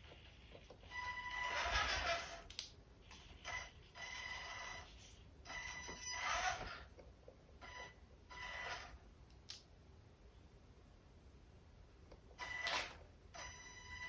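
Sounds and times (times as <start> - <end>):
toy car motor whirring: 0.8 - 6.9, 7.7 - 9.0.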